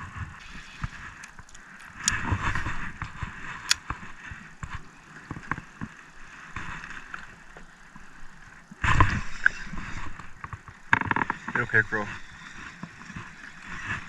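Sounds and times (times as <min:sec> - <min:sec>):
fishing reel whirring and clicking: 0:00.4 - 0:04.1.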